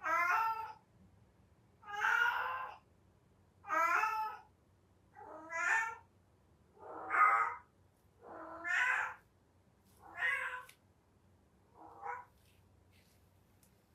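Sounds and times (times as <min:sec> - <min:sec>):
cat yowling: 0:00.0 - 0:00.8, 0:01.8 - 0:02.8, 0:03.6 - 0:04.5, 0:05.2 - 0:06.0, 0:06.8 - 0:09.2, 0:10.0 - 0:10.7, 0:11.8 - 0:12.3.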